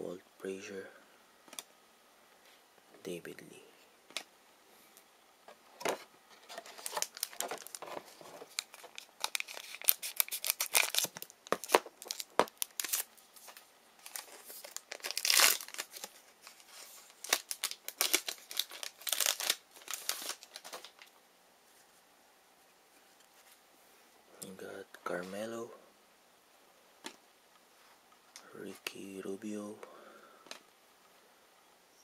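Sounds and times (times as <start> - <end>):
wrapper tearing and crinkling: 6.5 - 21.1.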